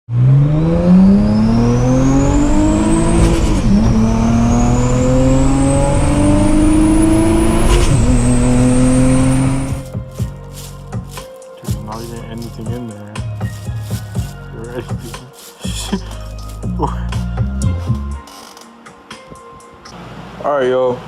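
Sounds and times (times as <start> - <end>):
car engine accelerating: 0.1 - 9.9.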